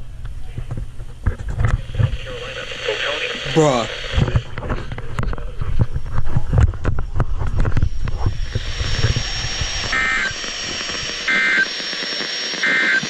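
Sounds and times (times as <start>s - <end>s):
crackling noise: 0.0s - 13.0s
radio receiver hiss: 1.2s - 13.0s
warbling data bursts: 7.6s - 13.0s.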